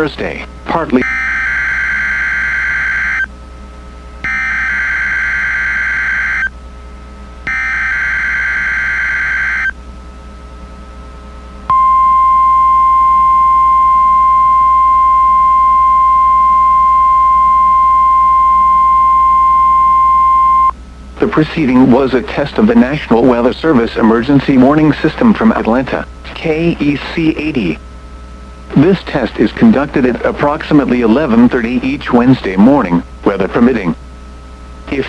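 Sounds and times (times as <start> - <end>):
data bursts: 0.8 - 3.3, 4.2 - 6.5, 7.5 - 9.7
long steady alarm tone: 1.0 - 3.4, 4.2 - 6.6, 7.4 - 9.8, 11.7 - 20.8.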